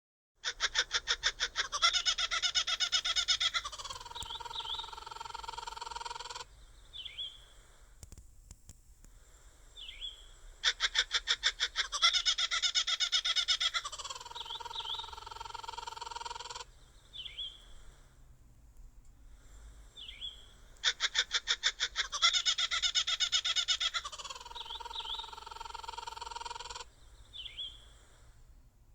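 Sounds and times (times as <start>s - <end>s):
kookaburra call: 0.4s - 7.5s, 10.0s - 17.7s, 20.2s - 28.2s
faint chirps: 0.6s - 18.2s, 19.3s - 28.5s.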